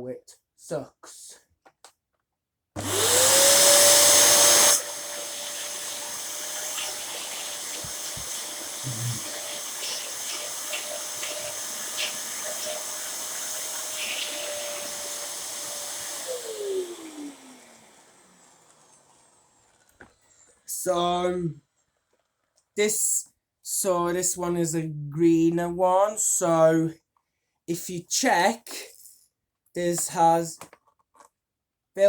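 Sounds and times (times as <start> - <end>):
vacuum cleaner motor whining: 2.8 - 20.7.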